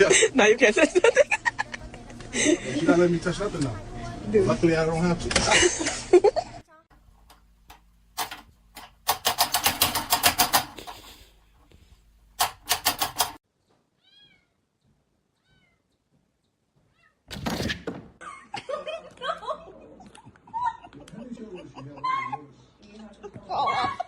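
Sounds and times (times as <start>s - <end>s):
rapid knocking and tapping: 7.7s - 10.9s, 12.4s - 13.4s
faint cat meows: 14.0s - 14.6s, 15.4s - 15.9s.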